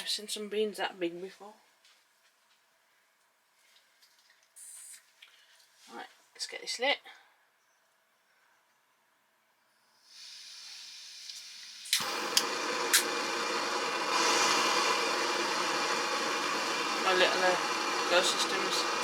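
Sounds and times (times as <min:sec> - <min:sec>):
gas hissing: 0:09.9 - 0:19.0
gas burner burning: 0:10.1 - 0:19.0
stove igniter clicks: 0:11.3 - 0:13.2.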